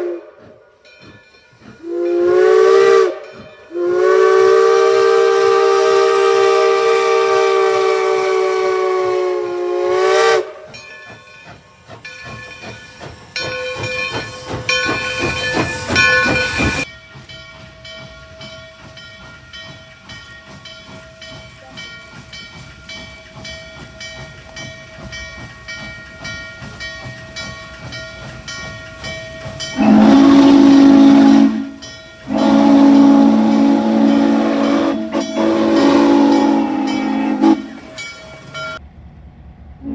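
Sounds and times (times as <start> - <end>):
steam hiss: 0.0 - 38.8
steam locomotive chime whistle: 0.0 - 38.8
low-pitched whistle blasts: 29.8 - 37.9.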